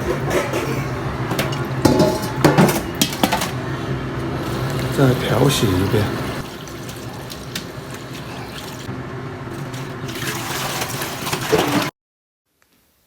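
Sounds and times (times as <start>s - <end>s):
water running and splashing: 4.4s - 8.9s, 9.5s - 11.9s.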